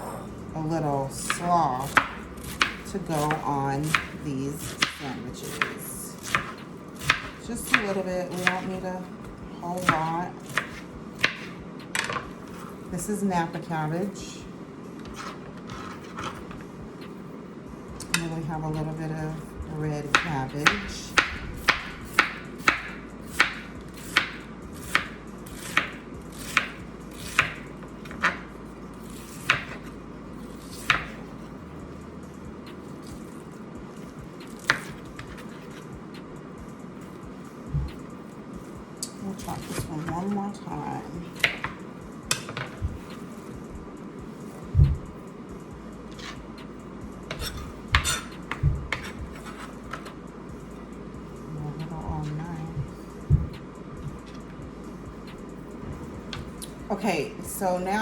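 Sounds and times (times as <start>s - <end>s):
knife chopping on cutting board: 1.2s - 9.0s, 9.7s - 12.7s, 20.0s - 28.4s, 29.2s - 29.9s, 30.6s - 31.4s, 34.5s - 35.9s, 41.3s - 43.2s, 47.3s - 50.1s, 52.2s - 54.4s.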